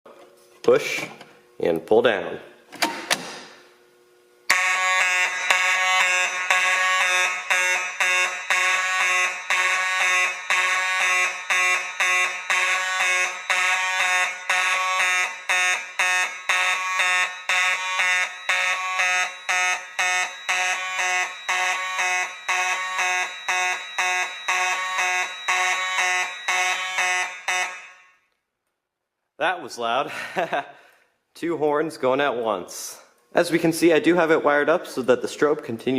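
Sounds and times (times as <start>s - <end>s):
fire alarm horns buzzing: 4.5s - 28.4s.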